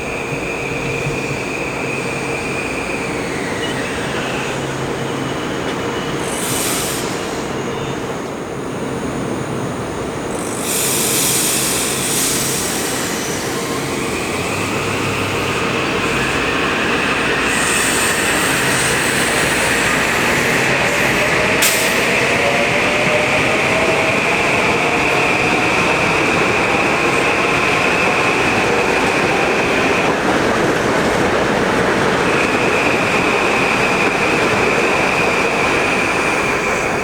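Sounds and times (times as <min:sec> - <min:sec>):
train wheels rushing on rail: 0:00.0 - 0:37.0
high hisses: 0:06.1 - 0:07.9, 0:10.3 - 0:29.0.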